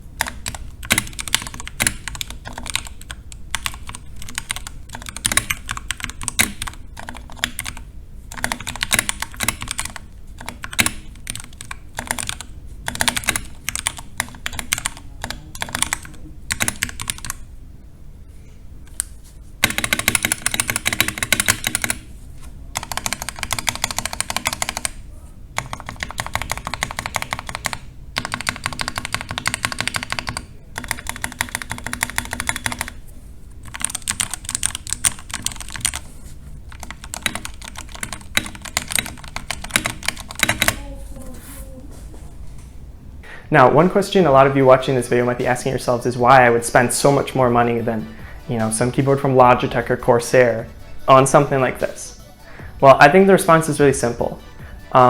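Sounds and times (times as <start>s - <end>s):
mechanical keyboard typing: 0.2s - 17.4s, 18.9s - 22.0s, 22.7s - 25.0s, 25.6s - 33.0s, 33.6s - 36.1s, 36.7s - 40.9s.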